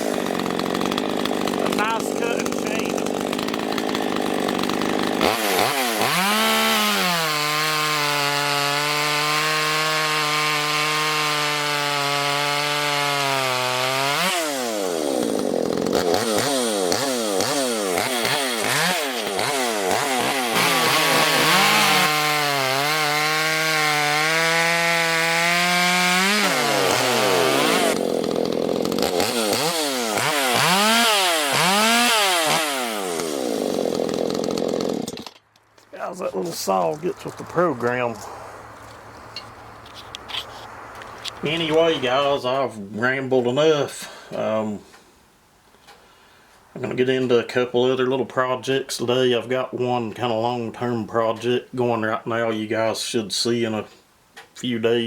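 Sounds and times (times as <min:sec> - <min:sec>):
chainsaw revving and cutting wood: 0:00.0 - 0:35.4, 0:36.0 - 0:38.3, 0:41.2 - 0:44.8.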